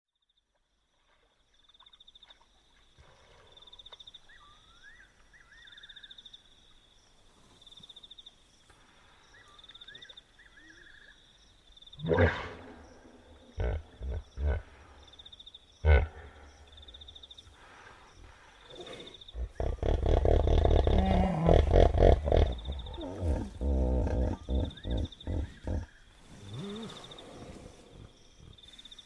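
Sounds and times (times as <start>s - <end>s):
hippopotamus grunting call: 15.8s - 16.5s, 18.7s - 28.1s
insect trilling in pulses: 18.7s - 28.6s.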